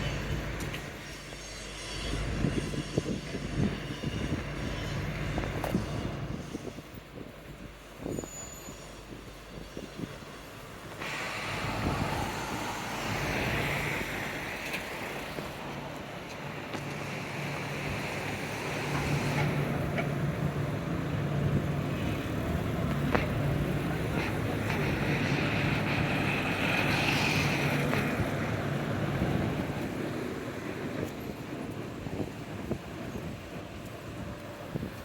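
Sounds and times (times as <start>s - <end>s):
street noise hiss: 0.0s - 35.0s
vehicle engine humming: 8.8s - 35.0s.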